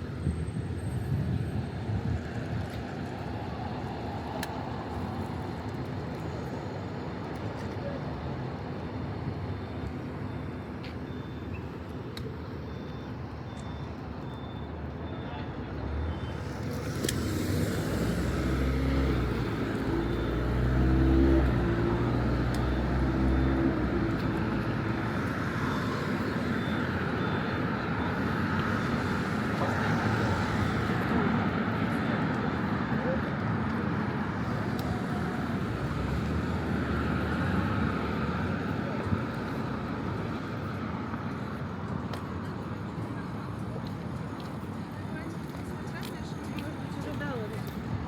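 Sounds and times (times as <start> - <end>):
road noise: 0.0 - 48.0
vehicle driving past: 16.3 - 24.6.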